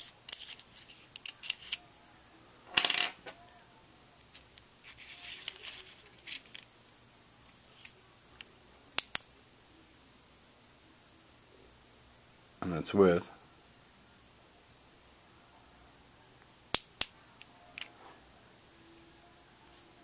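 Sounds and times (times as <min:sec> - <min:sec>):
soft rubbing: 0:04.8 - 0:06.7.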